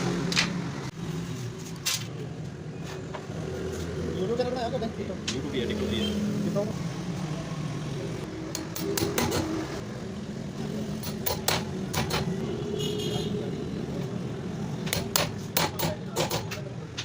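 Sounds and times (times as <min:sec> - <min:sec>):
traffic hum: 0:00.0 - 0:17.0
metallic clicks of hand tools: 0:08.5 - 0:09.5, 0:11.0 - 0:12.3, 0:14.8 - 0:17.0.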